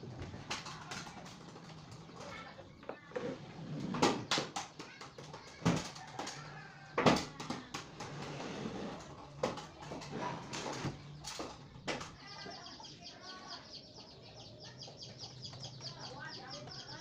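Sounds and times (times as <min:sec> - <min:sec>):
sharp knocks and clatters: 0:00.0 - 0:12.6
fast high-pitched chirping: 0:12.2 - 0:17.0.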